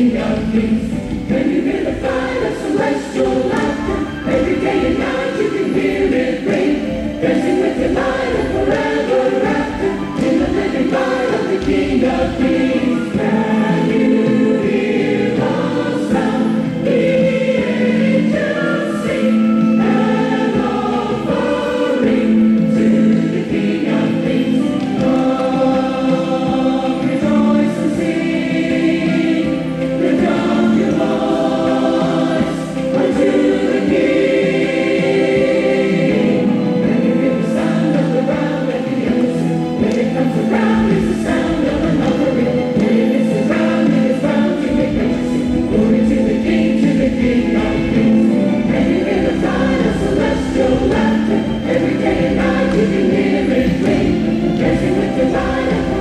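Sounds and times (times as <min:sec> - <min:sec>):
gospel choir singing: 0:00.0 - 0:56.0.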